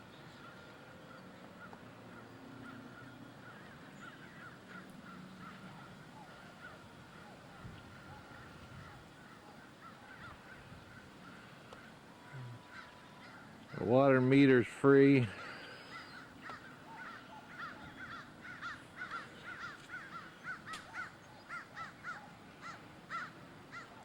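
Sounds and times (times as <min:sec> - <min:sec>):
birds chirping faintly: 0:00.0 - 0:24.0.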